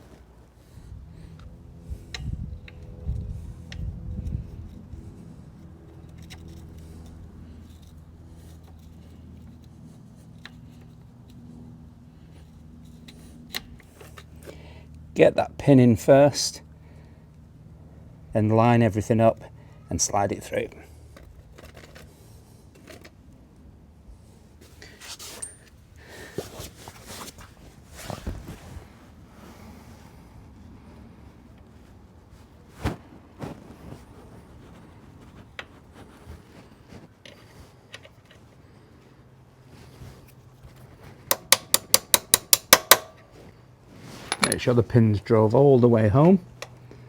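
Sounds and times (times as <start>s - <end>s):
steady low hum: 0.0s - 47.0s
small metal parts clicking: 44.3s - 44.7s.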